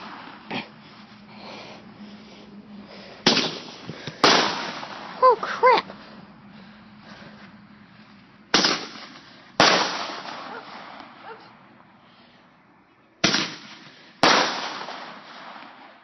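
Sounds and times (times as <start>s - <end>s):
fireworks bangs with echo: 3.2s - 5.2s, 8.5s - 11.0s, 13.2s - 16.0s.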